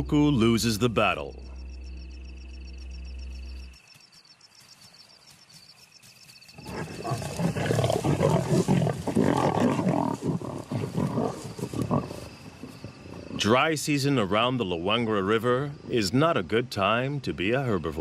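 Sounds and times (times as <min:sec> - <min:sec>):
night insects chirping: 0:00.0 - 0:18.0
lions growling and snarling: 0:06.6 - 0:13.7.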